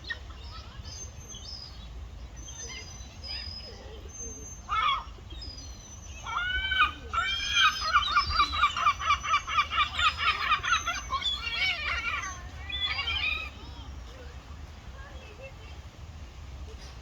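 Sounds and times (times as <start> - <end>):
gull calling: 4.7 - 13.8.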